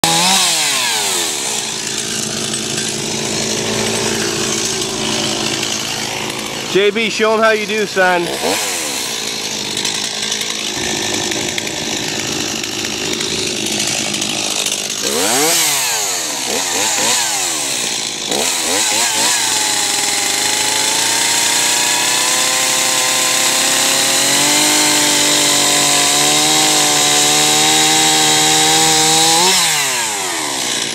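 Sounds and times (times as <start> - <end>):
chainsaw revving: 0.0 - 30.9.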